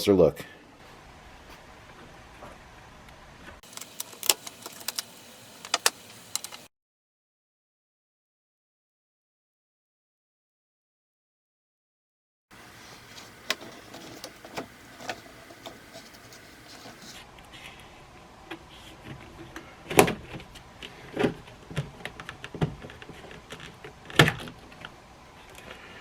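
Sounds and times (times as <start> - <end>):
engine parts clicking and knocking: 12.5 - 17.2.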